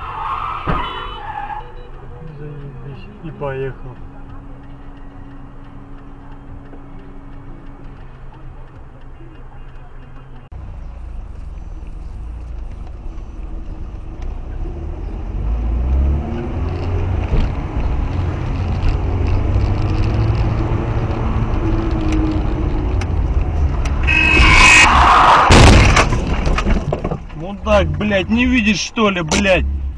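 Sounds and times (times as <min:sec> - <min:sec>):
road noise: 0:00.0 - 0:29.9
car horn blast: 0:00.7 - 0:02.0, 0:24.0 - 0:25.3
car engine accelerating: 0:01.3 - 0:25.6.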